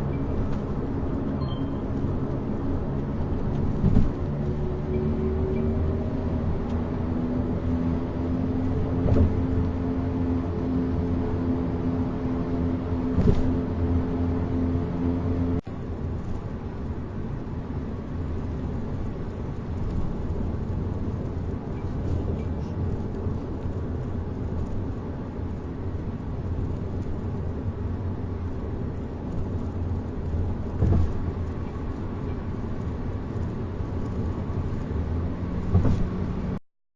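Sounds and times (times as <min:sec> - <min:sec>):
road and tyre noise: 0:00.0 - 0:36.6
car bump: 0:03.7 - 0:04.2, 0:09.0 - 0:09.4, 0:13.1 - 0:13.6, 0:35.6 - 0:36.2.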